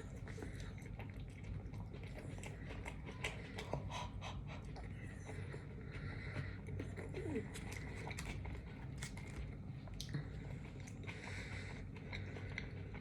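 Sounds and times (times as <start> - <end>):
steady low hum: 0.0 - 13.0
wet chewing clicks and smacks: 0.0 - 13.0
breathing: 2.5 - 6.9, 10.1 - 13.0.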